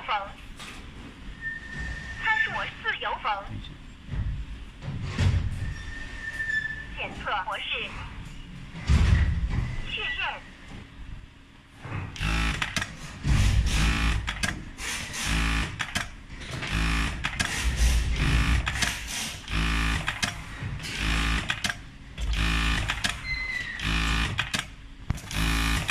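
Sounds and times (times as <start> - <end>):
sewing machine running: 13.4 - 16.0, 16.6 - 24.6, 25.2 - 25.9.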